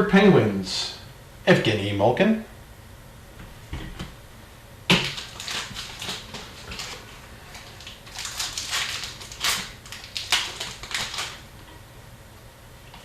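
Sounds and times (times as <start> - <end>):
card packs tearing and rustling: 4.9 - 11.5.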